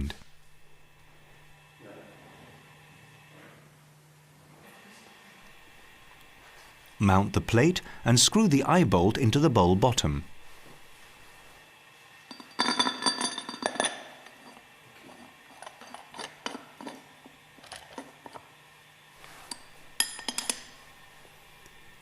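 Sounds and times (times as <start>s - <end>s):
metal parts clinking and ringing: 12.3s - 14.6s, 15.5s - 17.0s, 19.5s - 20.7s.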